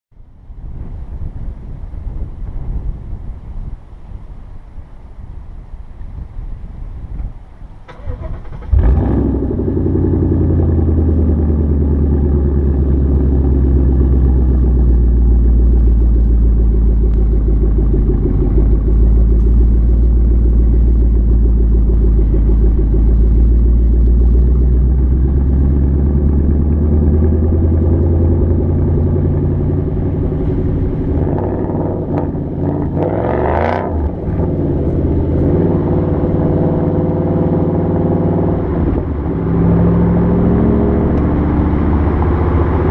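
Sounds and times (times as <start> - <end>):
car engine idling: 7.4 - 38.0
engine revving: 7.9 - 42.9.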